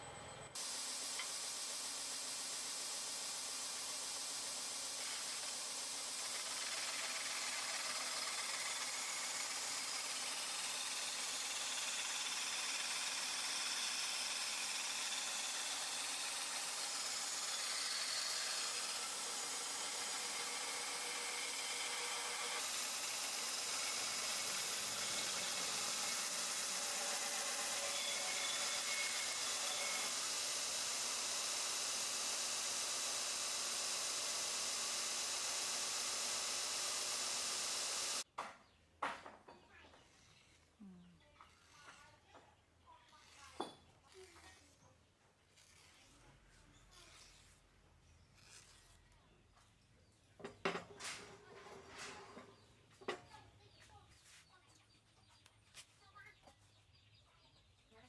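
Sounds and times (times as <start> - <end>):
belt grinder hissing: 0.6 - 38.2.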